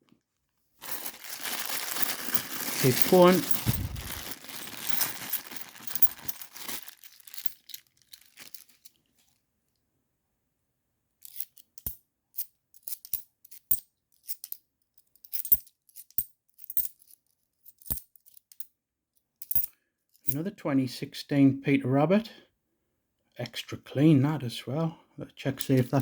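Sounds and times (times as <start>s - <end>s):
plastic bag crinkling: 0.8s - 9.0s
coins clicking together: 4.9s - 6.5s, 11.3s - 12.0s, 12.8s - 14.6s, 15.2s - 17.1s, 17.7s - 18.7s, 19.4s - 20.4s.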